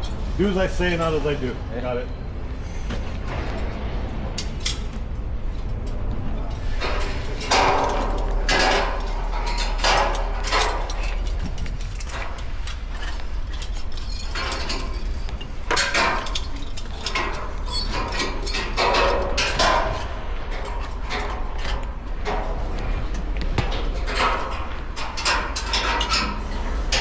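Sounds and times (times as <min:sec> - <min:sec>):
low rumble of wind: 0:00.0 - 0:27.0
metallic clanks on steel ladder: 0:06.4 - 0:27.0.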